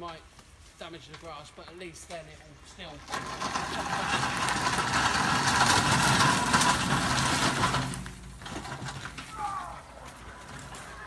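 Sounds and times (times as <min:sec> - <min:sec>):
engine humming: 0:03.0 - 0:11.0.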